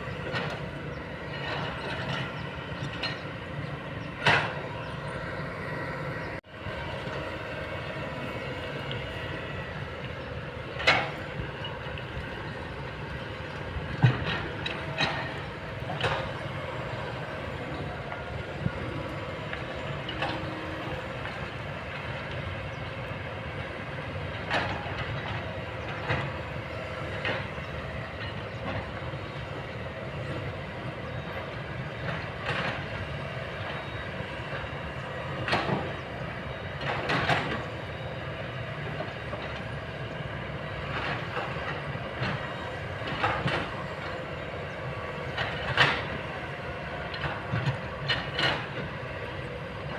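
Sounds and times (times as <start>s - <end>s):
excavator diesel engine running: 0.0s - 49.9s
metallic clanks and knocks: 4.1s - 4.7s.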